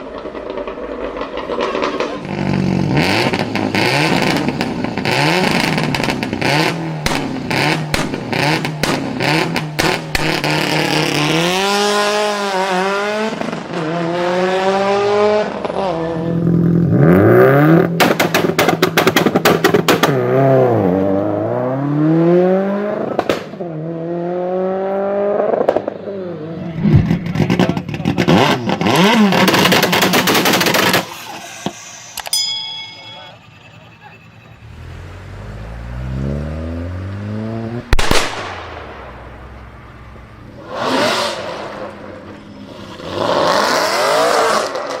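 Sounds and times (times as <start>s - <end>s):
exhaust pops and crackles: 0.0s - 11.4s, 17.8s - 20.4s, 23.1s - 23.6s, 26.8s - 31.8s, 37.8s - 40.4s
car engine revving hard: 1.8s - 31.6s, 34.6s - 45.0s.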